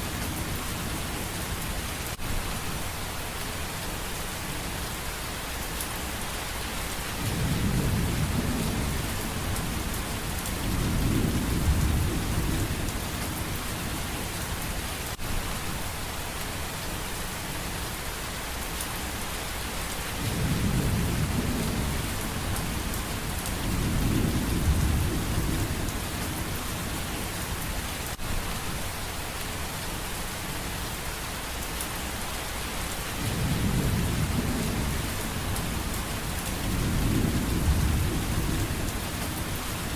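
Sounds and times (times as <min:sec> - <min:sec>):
steady rain hissing: 0:00.0 - 0:39.9
low rolling thunder: 0:07.2 - 0:13.2, 0:20.2 - 0:26.5, 0:33.2 - 0:39.6.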